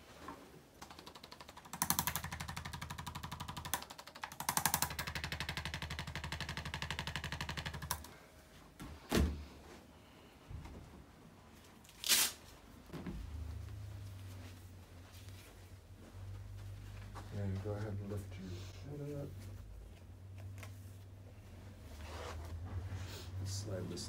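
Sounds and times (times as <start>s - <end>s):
rapid machine-like tapping: 0.8s - 8.1s.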